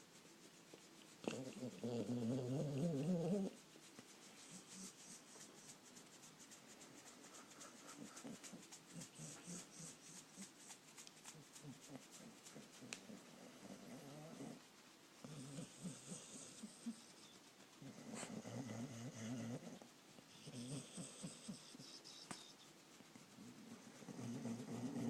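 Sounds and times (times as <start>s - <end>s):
dog sleep noises: 0.0s - 25.0s
dog snoring softly: 1.1s - 3.7s, 7.2s - 10.7s, 11.6s - 25.0s.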